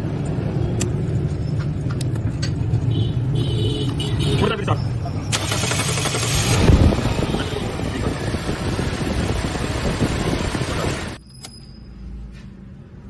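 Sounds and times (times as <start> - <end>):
car engine starting and running: 4.4 - 11.2.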